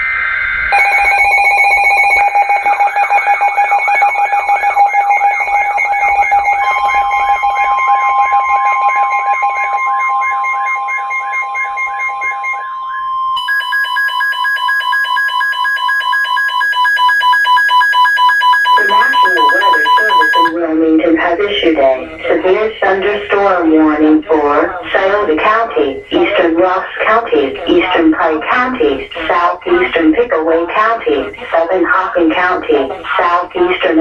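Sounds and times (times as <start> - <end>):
electronic alarm tones warbling: 0.0 - 20.6.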